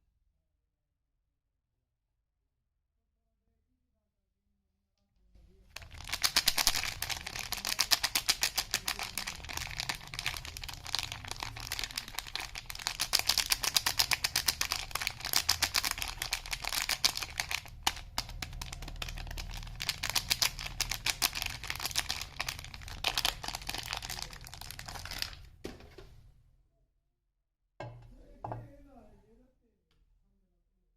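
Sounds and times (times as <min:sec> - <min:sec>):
packaging crinkling: 0:05.8 - 0:25.5.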